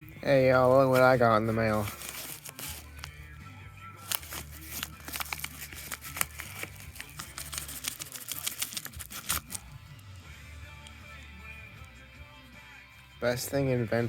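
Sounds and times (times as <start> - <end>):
packaging crinkling and tearing: 0.9 - 3.2, 4.0 - 9.8.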